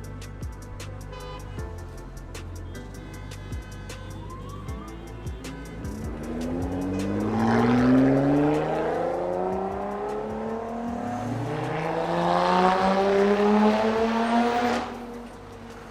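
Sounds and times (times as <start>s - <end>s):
car engine accelerating hard: 6.0s - 15.9s.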